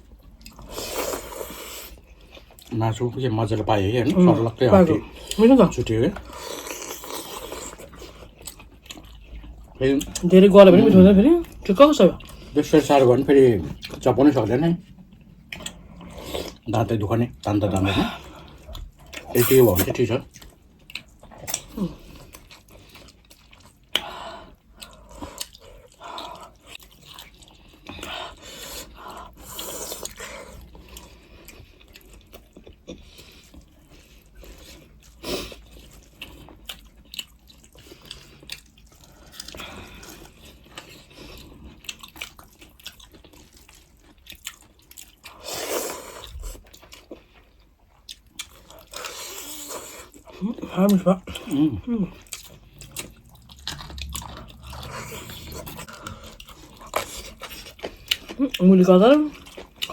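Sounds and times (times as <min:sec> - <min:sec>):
wet chewing and slurping: 0:00.0 - 0:02.8, 0:04.4 - 0:59.9.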